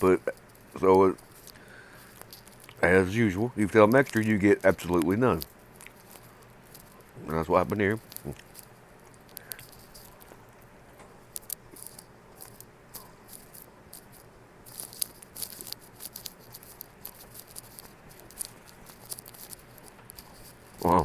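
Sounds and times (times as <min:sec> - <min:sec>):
chewing close to microphone: 0:00.0 - 0:21.0
wrapper rustling: 0:13.3 - 0:21.0.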